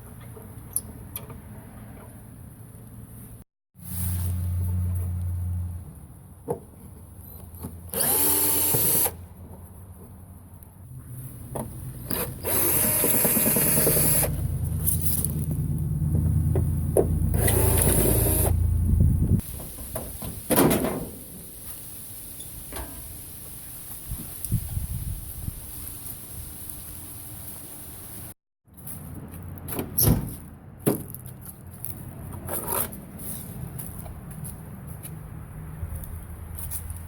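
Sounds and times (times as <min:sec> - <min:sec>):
power drill motor whine: 0:07.9 - 0:09.2, 0:12.1 - 0:14.3, 0:17.4 - 0:18.6.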